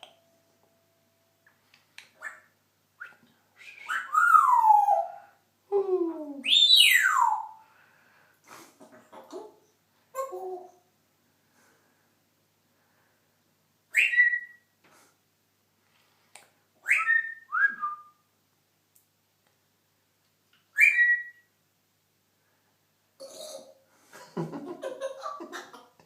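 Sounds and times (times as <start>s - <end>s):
parrot whistling: 3.6s - 5.0s.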